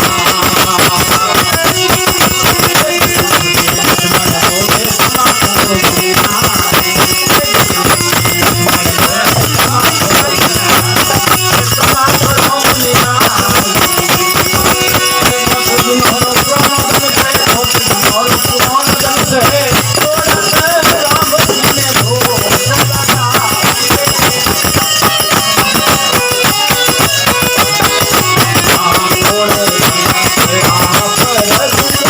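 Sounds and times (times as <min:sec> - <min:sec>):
fast dense percussion: 0:00.0 - 0:32.0
instrumental devotional music: 0:00.0 - 0:32.0.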